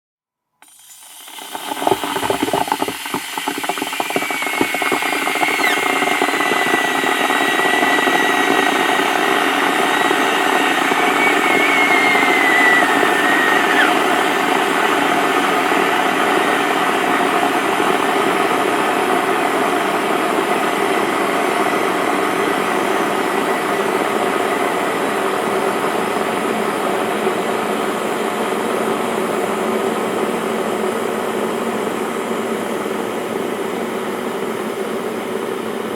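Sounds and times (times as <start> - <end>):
kettle boiling: 0.6 - 26.4
thin wavering whistle: 4.0 - 14.8.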